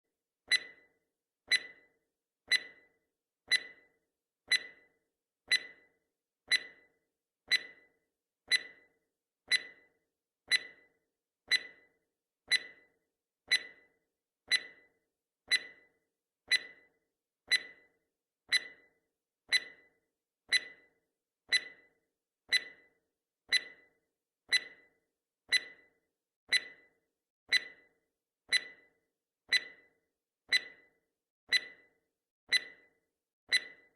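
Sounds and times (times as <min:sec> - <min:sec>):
clock ticking: 0:00.5 - 0:00.9, 0:01.5 - 0:01.9, 0:02.5 - 0:02.9, 0:03.5 - 0:03.9, 0:04.5 - 0:04.9, 0:05.5 - 0:05.9, 0:06.5 - 0:06.9, 0:07.5 - 0:07.9, 0:08.5 - 0:08.9, 0:09.5 - 0:09.9, 0:10.5 - 0:10.9, 0:11.5 - 0:11.9, 0:12.5 - 0:12.9, 0:13.5 - 0:13.9, 0:14.5 - 0:14.9, 0:15.5 - 0:15.9, 0:16.5 - 0:16.9, 0:17.5 - 0:17.9, 0:18.5 - 0:18.9, 0:19.5 - 0:33.9.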